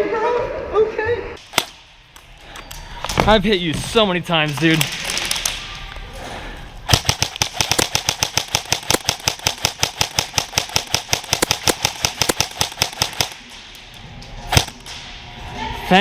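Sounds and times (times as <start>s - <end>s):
airsoft gun rapid fire: 6.9s - 13.8s, 14.5s - 14.9s.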